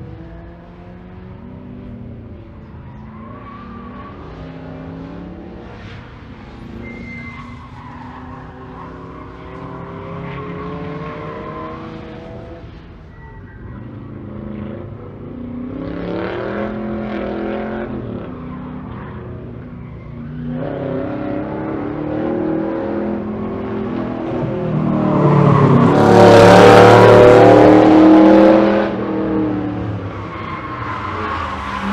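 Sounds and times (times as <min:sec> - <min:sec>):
race car engine accelerating: 0:20.5 - 0:31.9.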